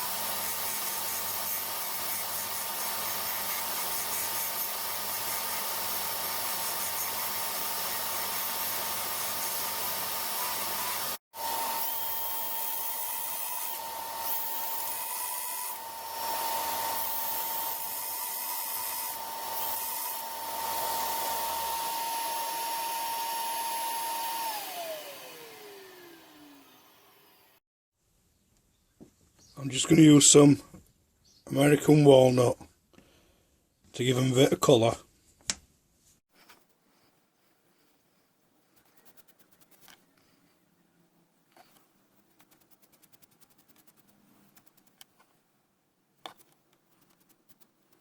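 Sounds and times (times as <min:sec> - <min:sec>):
power tool motor running: 0:00.0 - 0:27.6
hissing rubbing noise: 0:36.5 - 0:40.0.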